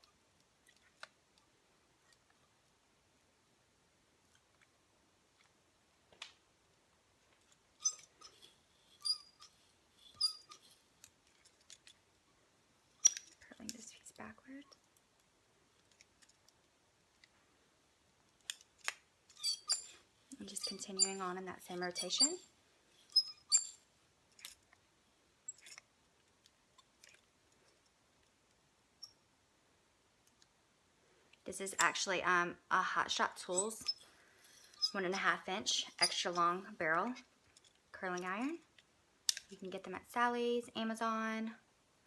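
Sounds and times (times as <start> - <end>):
curling iron clamp squeaky clicks: 7.8 - 10.7, 13.0 - 13.4, 19.3 - 22.4, 23.1 - 23.8, 33.6 - 36.6
hair rustling: 19.6 - 23.8.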